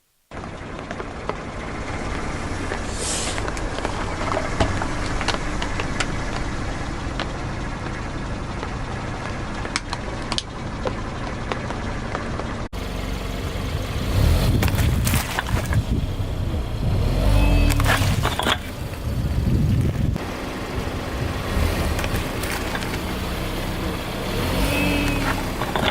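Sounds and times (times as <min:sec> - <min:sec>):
car engine running: 0:00.3 - 0:25.9
tyres crunching objects: 0:13.5 - 0:20.4, 0:21.5 - 0:25.9.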